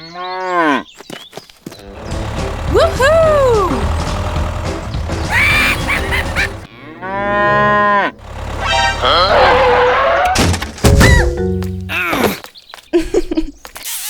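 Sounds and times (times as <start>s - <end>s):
cow mooing: 6.7s - 10.2s.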